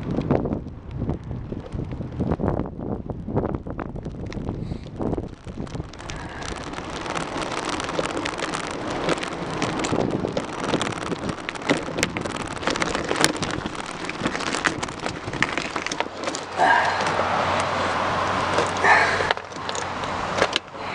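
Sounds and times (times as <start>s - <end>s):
bicycle tyre noise: 0.0s - 20.9s
wind rushing on microphone: 0.0s - 20.9s
small clicks and rattles: 3.4s - 20.9s.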